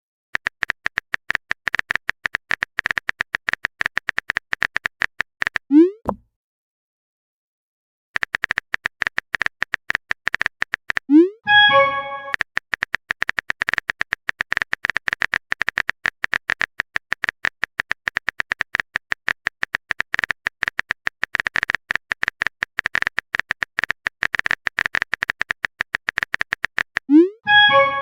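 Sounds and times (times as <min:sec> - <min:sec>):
keyboard typing clicks: 0:00.4 - 0:06.2, 0:08.2 - 0:11.3, 0:12.1 - 0:27.3.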